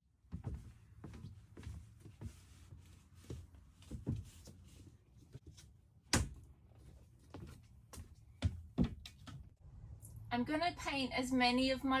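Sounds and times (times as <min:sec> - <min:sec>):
knocks and thumps of handling: 0:07.3 - 0:09.5.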